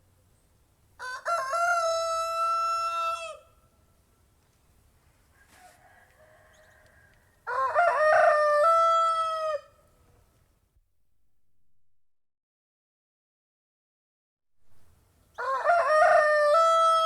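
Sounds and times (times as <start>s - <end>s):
rooster crowing: 1.0s - 3.6s, 5.3s - 9.8s, 15.4s - 17.0s.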